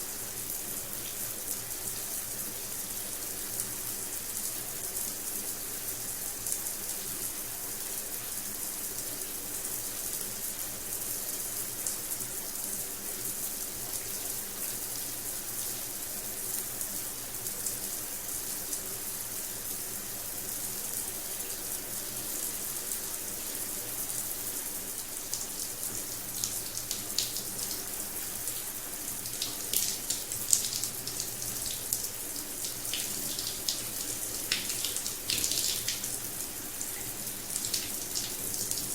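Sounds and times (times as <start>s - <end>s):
shower water spraying: 25.3s - 38.9s.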